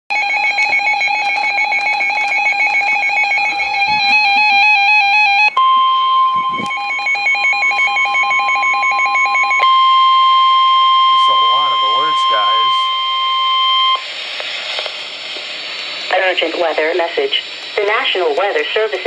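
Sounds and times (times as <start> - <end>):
steady alarm tone: 0.1 - 14.4.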